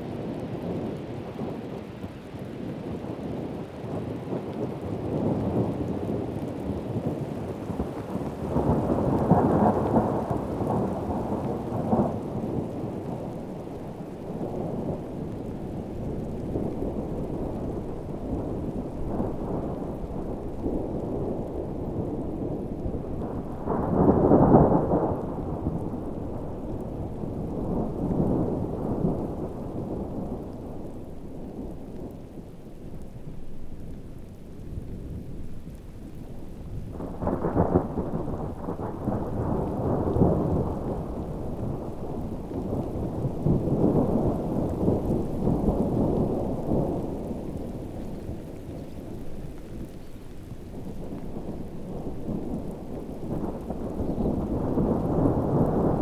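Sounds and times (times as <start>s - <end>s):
heavy rain falling: 0.0s - 56.0s
rolling thunder: 4.1s - 56.0s.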